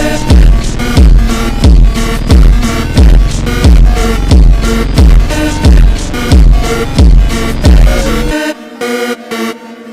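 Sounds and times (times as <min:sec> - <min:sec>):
electronic music: 0:00.0 - 0:09.9
heavy bass drum hits: 0:00.3 - 0:08.0.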